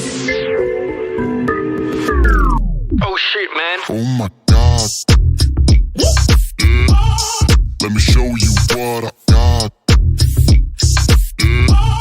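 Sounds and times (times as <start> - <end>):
chopped vocal snippets: 3.0 - 9.8
hip hop drum machine beat: 4.5 - 12.0.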